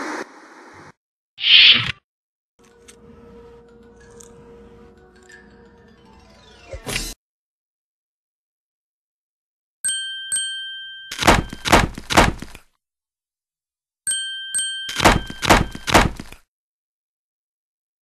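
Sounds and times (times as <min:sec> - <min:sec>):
bell-like cartoon dings: 0:09.8 - 0:11.7, 0:14.1 - 0:15.9.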